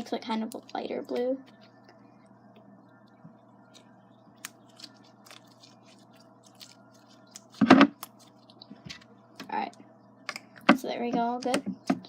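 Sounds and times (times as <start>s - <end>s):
slime squishing: 3.7s - 9.1s.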